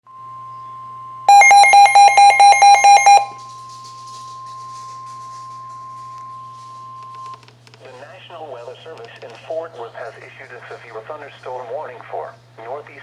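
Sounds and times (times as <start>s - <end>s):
steady alarm tone: 0.1s - 7.3s
rapid electronic beeping: 1.3s - 3.3s.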